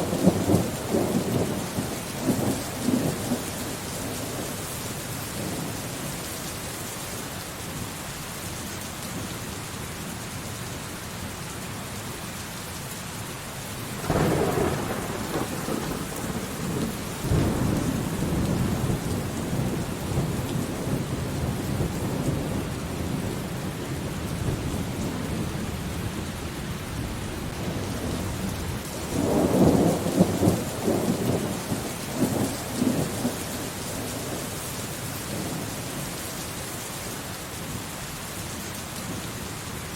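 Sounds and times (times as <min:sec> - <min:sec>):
rumbling thunder: 0:00.0 - 0:04.6, 0:14.0 - 0:34.5
steady rain: 0:00.0 - 0:39.9.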